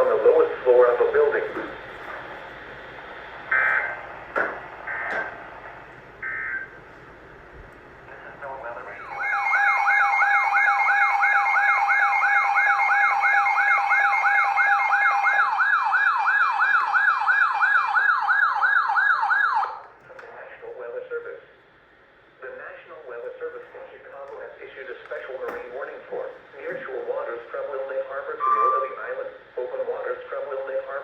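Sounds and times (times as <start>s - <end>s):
electronic siren alarm yelp: 3.5s - 4.0s, 6.2s - 6.8s, 8.9s - 19.8s
short electronic beeps: 28.4s - 29.0s.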